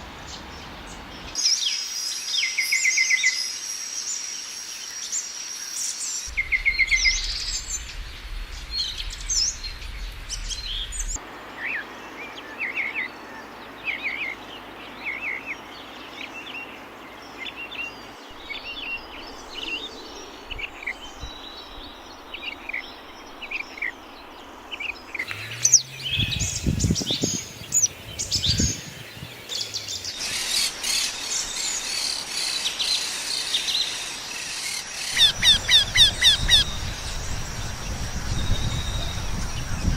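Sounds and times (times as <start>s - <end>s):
wild birds chirping: 5.6s - 39.9s
low thumps: 25.3s - 30.1s.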